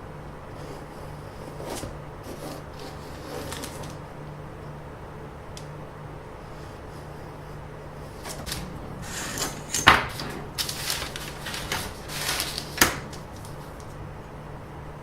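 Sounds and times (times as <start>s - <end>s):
steady low hum: 0.0s - 15.0s
rustling and handling noise: 0.7s - 4.2s, 8.1s - 14.2s.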